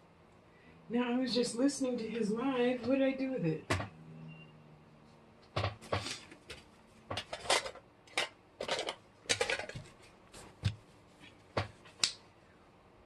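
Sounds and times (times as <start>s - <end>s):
hard objects rummaged and clattering: 5.6s - 10.8s.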